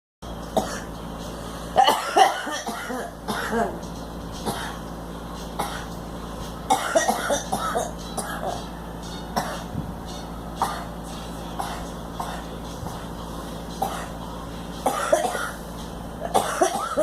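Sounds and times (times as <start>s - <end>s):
steady low hum: 0.2s - 17.0s
girl coughing: 0.6s - 0.9s, 1.8s - 3.8s, 6.7s - 8.6s, 9.4s - 9.7s, 13.8s - 14.2s, 14.8s - 15.6s, 16.2s - 17.0s.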